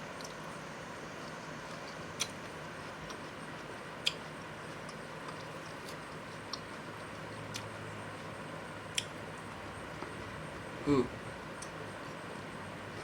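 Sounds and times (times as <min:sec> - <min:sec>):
chewing mouth clicks: 0:01.2 - 0:06.8, 0:07.4 - 0:07.7.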